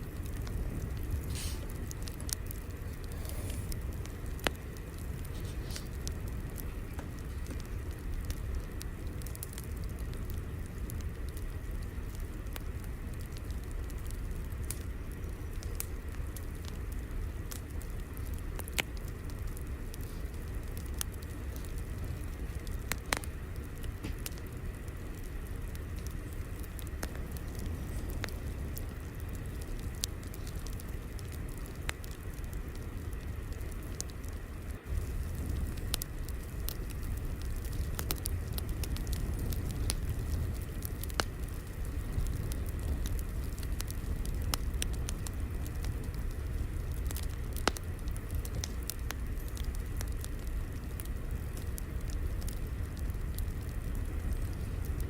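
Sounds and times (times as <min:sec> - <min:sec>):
fire crackling: 0:00.0 - 0:55.0
sharp pops and snaps: 0:33.5 - 0:50.5.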